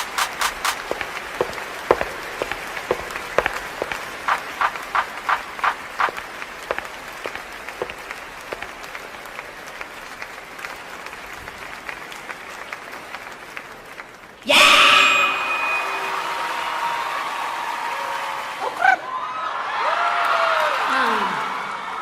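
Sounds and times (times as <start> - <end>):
loud sound with held tones: 0.0 - 0.9
close hand claps: 0.0 - 1.6, 2.4 - 14.2
audience applauding: 0.0 - 14.4, 15.7 - 22.0.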